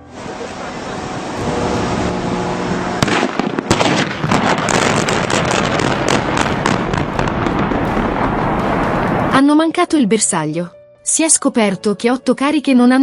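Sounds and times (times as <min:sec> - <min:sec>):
steady rushing noise: 0:00.0 - 0:09.5
explosive charges banging: 0:01.1 - 0:09.4.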